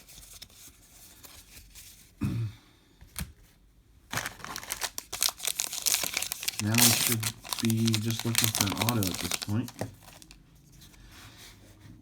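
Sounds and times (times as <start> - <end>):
foil wrapper crinkling and tearing: 4.1 - 10.4.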